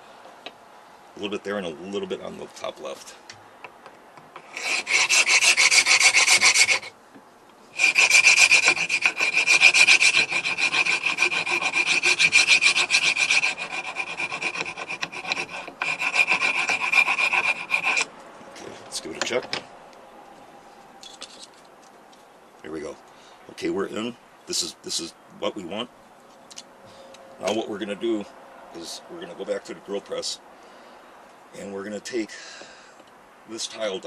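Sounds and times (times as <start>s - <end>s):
metal file rasping on stone: 4.4s - 6.9s, 7.8s - 18.1s.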